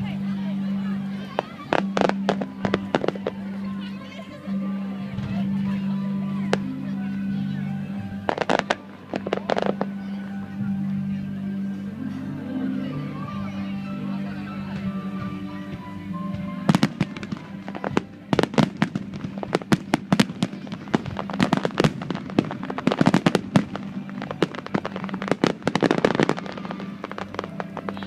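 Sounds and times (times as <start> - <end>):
background music: 0.0 - 28.0
fireworks crackling: 1.1 - 4.6, 8.1 - 10.4, 16.6 - 28.0.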